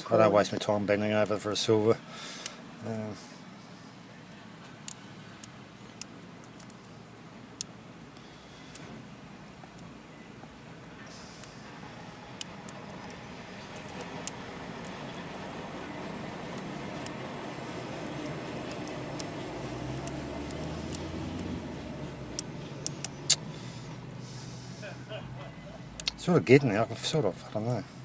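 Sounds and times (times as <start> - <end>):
low hum: 3.7 - 26.2
lock picks clicking: 4.8 - 6.8
vehicle engine running: 10.6 - 26.4.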